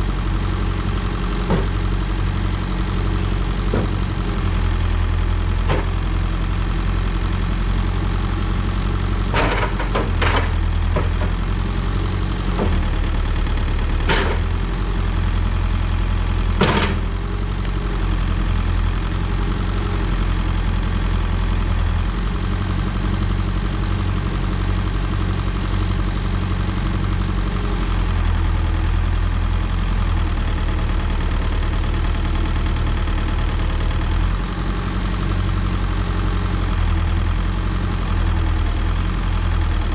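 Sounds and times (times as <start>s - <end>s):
diesel engine idling: 0.0s - 39.9s
sharp engine knocks: 1.2s - 2.0s, 3.6s - 4.2s, 5.6s - 6.0s, 9.2s - 11.4s, 14.0s - 14.5s, 16.5s - 17.2s.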